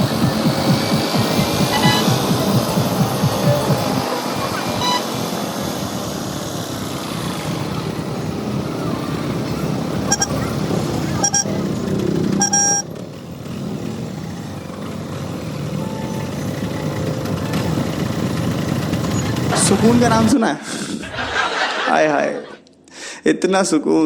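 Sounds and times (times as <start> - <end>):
motorcycle engine running: 0.0 - 20.3
road and wind noise: 0.0 - 22.9
vehicle horn honks: 1.7 - 2.2, 4.7 - 5.2, 11.2 - 11.5, 12.4 - 12.8.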